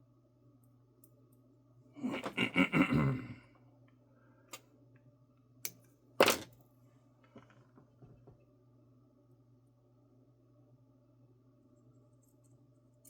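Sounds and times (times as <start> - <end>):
tools clattering on workbench: 6.2 - 6.6.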